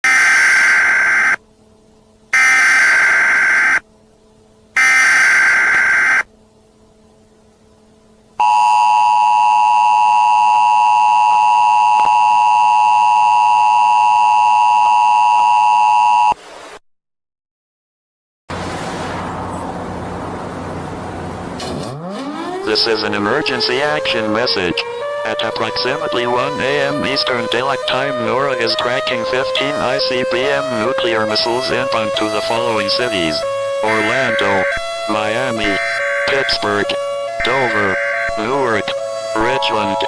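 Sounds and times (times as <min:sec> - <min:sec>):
data burst tones: 0:02.4 - 0:03.8, 0:04.8 - 0:06.3
two-tone attention signal: 0:08.4 - 0:16.4.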